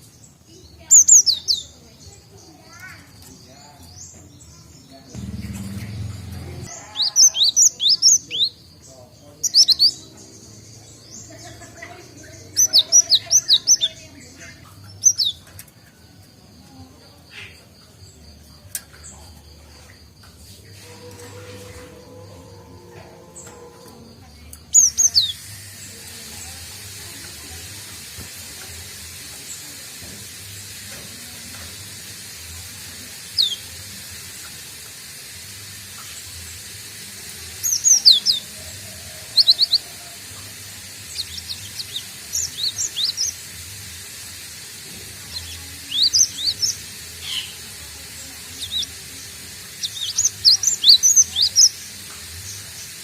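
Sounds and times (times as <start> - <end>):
bird chirping: 0.0 - 27.5, 33.0 - 33.9, 37.5 - 53.0
steady background hiss: 24.4 - 53.0.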